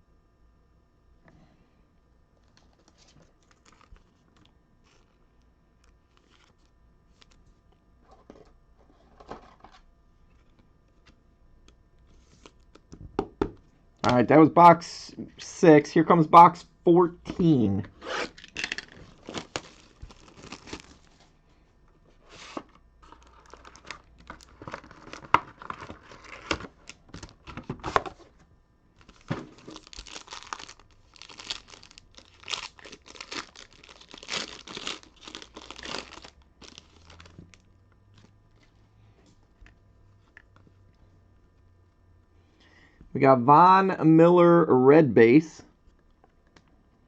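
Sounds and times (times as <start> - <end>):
wrapping tearing and crinkling: 2.4 - 5.2, 5.9 - 7.4, 18.0 - 21.2, 22.3 - 28.2, 29.0 - 38.3.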